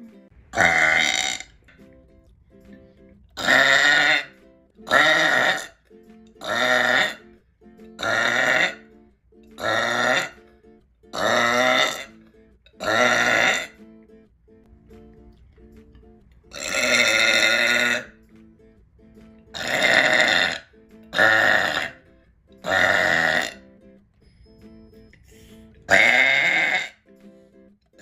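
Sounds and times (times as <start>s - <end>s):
quiet background music: 0.0s - 28.0s
person burping loudly: 0.5s - 1.5s, 3.4s - 5.8s, 6.4s - 7.3s, 8.0s - 8.9s, 9.6s - 10.4s, 11.1s - 12.2s, 12.8s - 13.8s, 16.5s - 18.2s, 19.5s - 22.0s, 22.6s - 23.6s, 25.3s - 27.1s.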